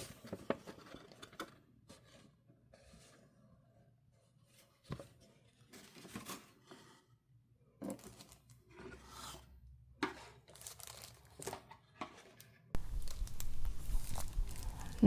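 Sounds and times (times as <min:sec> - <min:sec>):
paper and packaging rustling: 0:04.6 - 0:06.9, 0:10.2 - 0:15.0.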